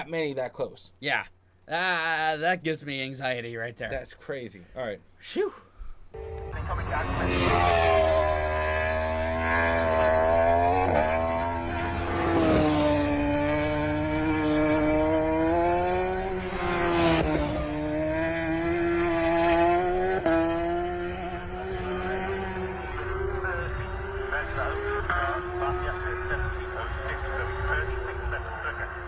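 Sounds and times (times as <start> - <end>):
motorcycle engine revving: 6.2 - 29.0.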